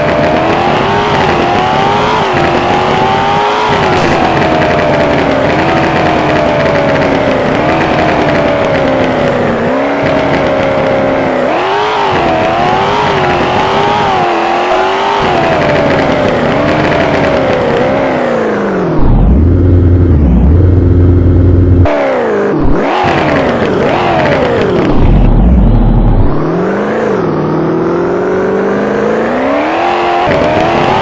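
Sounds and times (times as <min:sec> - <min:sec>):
car engine revving: 0:00.0 - 0:31.0
loud low rumble: 0:18.8 - 0:21.9, 0:24.6 - 0:26.4.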